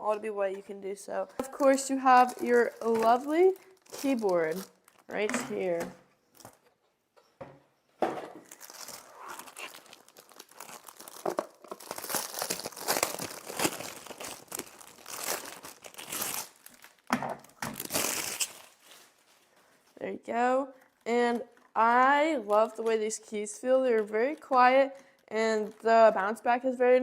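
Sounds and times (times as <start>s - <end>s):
packaging crinkling and rustling: 1.5s - 6.8s, 8.4s - 19.6s.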